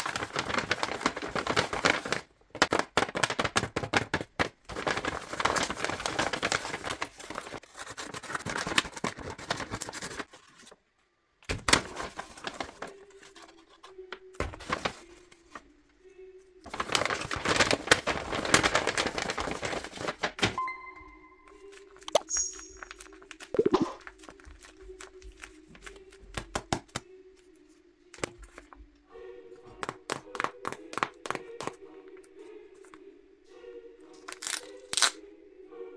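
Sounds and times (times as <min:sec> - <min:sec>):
paper rustling and crackling: 0:00.0 - 0:10.8, 0:11.5 - 0:15.8, 0:16.6 - 0:20.6, 0:23.0 - 0:27.0, 0:27.6 - 0:28.8, 0:34.3 - 0:35.1.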